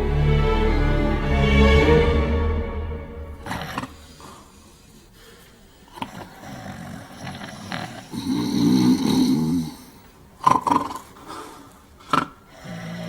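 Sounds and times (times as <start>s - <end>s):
men snoring loudly: 6.1s - 9.9s.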